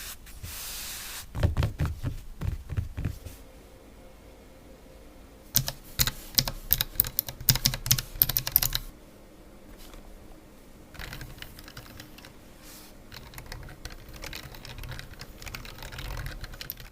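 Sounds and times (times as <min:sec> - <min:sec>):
mechanical keyboard typing: 0:05.6 - 0:08.9, 0:10.9 - 0:12.4, 0:13.1 - 0:16.9.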